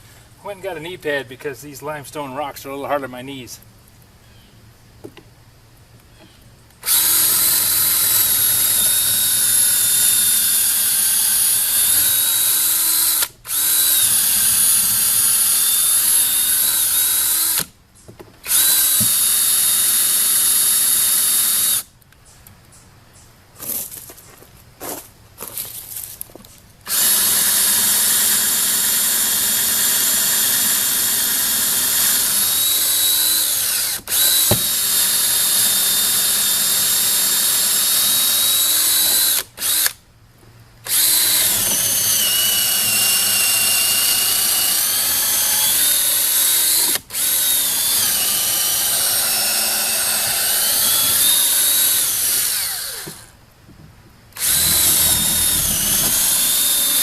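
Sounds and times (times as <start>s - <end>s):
cordless drill boring through wood: 6.8s - 17.7s, 18.4s - 21.9s, 26.9s - 40.0s, 40.8s - 53.4s, 54.4s - 57.0s.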